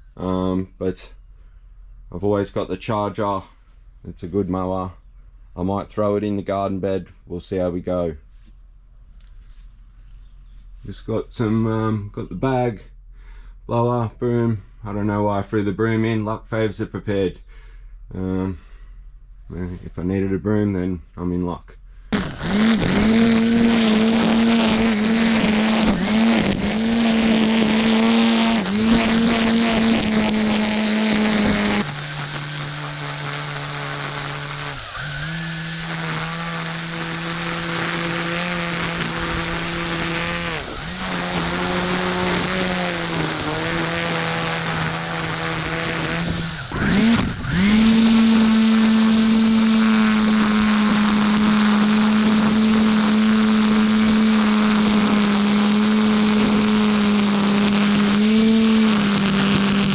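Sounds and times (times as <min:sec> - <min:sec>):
small petrol engine running: 0:22.2 - 0:59.9.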